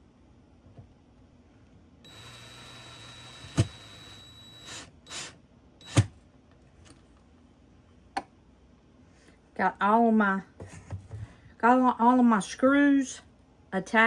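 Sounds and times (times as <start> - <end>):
electric drill whining: 2.1 - 6.1.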